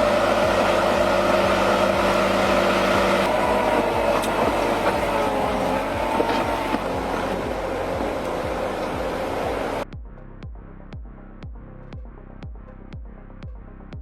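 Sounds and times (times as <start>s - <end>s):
heavy machine engine running: 0.0s - 9.8s.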